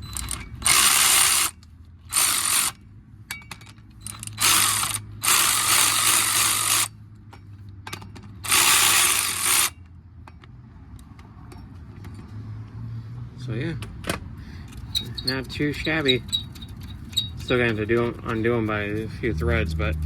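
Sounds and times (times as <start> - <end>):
hand ratchet clicking rapidly: 0.0 - 2.8, 4.0 - 6.9, 8.4 - 9.7, 14.8 - 19.5.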